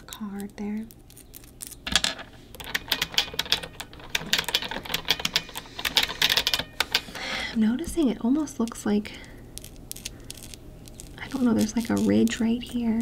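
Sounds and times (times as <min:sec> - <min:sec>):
mechanical keyboard typing: 0:02.6 - 0:07.0.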